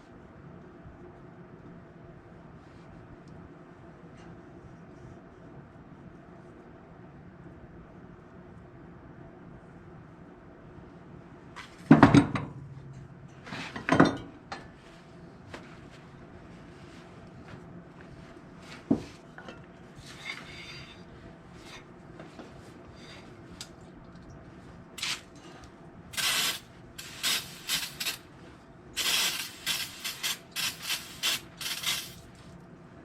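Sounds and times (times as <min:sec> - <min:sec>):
quick scraping strokes on metal: 0:29.0 - 0:32.2.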